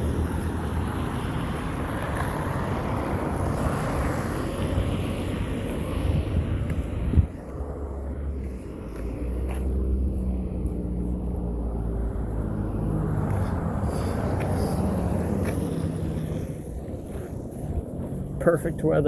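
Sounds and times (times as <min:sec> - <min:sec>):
passing traffic road noise: 0:00.0 - 0:19.0
vehicle engine humming: 0:00.0 - 0:19.0.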